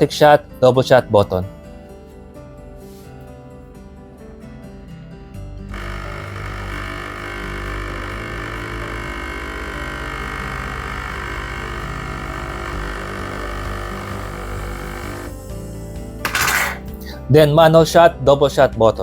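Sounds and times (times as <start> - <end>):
espresso machine pump humming: 5.7 - 16.8.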